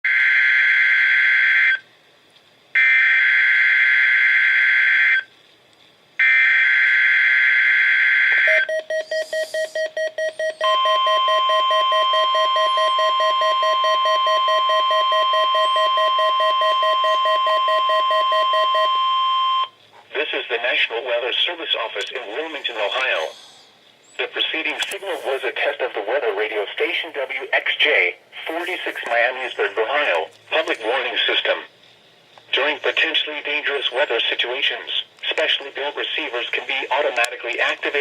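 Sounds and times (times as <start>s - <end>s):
steady warning alarm tone: 0.1s - 1.8s, 2.8s - 5.3s, 6.2s - 19.8s
warbling digital data screech: 8.4s - 10.7s.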